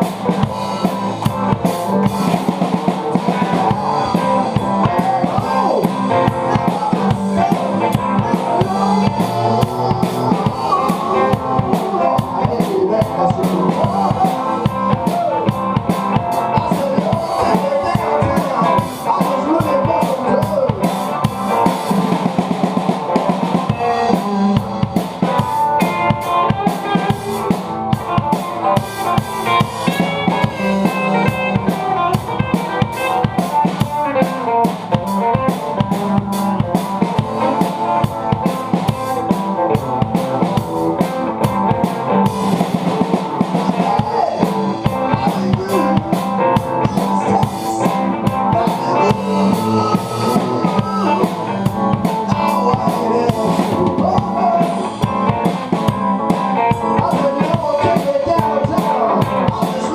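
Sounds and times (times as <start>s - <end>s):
drum kit beating: 0.0s - 59.9s
rock band playing: 0.0s - 59.9s.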